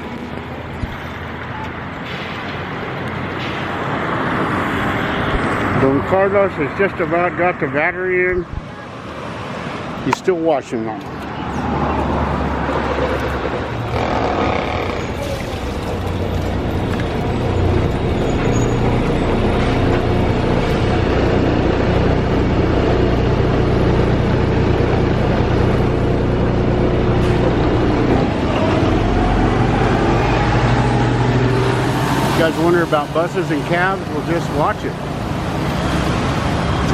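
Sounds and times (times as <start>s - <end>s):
street traffic: 0.0s - 36.9s
vehicle engine running close: 11.1s - 36.9s.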